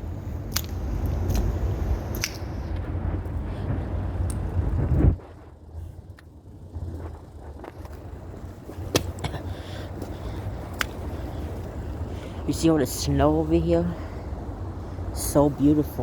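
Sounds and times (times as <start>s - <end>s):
low rumbling street noise: 0.0s - 16.0s
sharp clicks: 2.1s - 2.4s.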